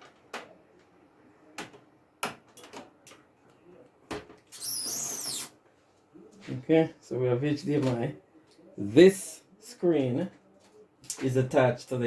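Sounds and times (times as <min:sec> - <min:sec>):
loud high squeak: 0:04.5 - 0:05.6.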